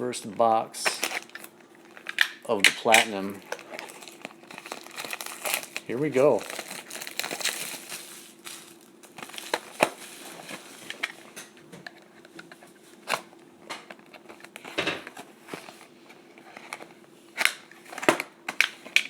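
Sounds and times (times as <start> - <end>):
plastic wrapping crinkling and tearing: 0.8 - 11.4.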